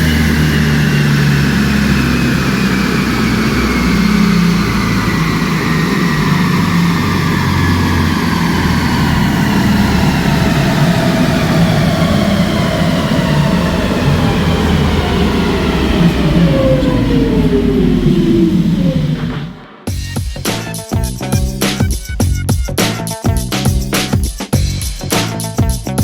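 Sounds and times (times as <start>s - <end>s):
car engine running on a dyno: 0.0s - 19.8s.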